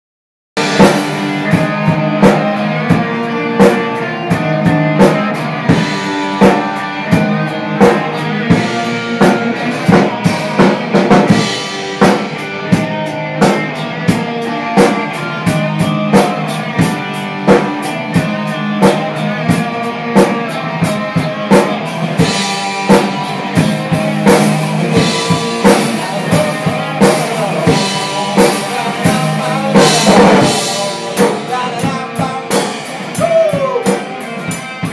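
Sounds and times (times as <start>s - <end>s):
drum kit beat: 0.6s - 34.9s
sustained guitar notes: 0.6s - 34.9s.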